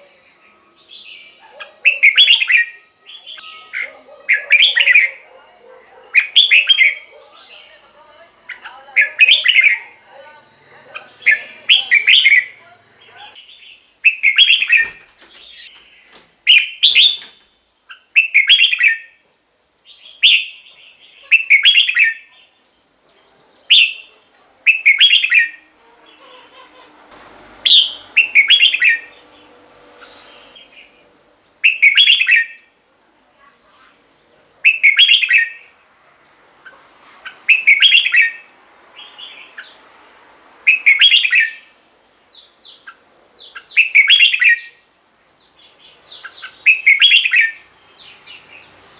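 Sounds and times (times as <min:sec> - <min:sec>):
soft bird chatter: 0:00.0 - 0:48.9
bird whistled song phrases: 0:00.1 - 0:05.2, 0:06.2 - 0:07.1, 0:08.5 - 0:10.0, 0:11.2 - 0:12.6, 0:13.4 - 0:15.0, 0:16.5 - 0:17.3, 0:17.9 - 0:19.2, 0:20.0 - 0:20.7, 0:21.3 - 0:22.3, 0:23.7 - 0:24.1, 0:24.7 - 0:25.6, 0:27.6 - 0:29.2, 0:31.6 - 0:32.7, 0:34.6 - 0:35.7, 0:37.2 - 0:39.8, 0:40.7 - 0:41.7, 0:42.3 - 0:44.8, 0:46.1 - 0:48.2.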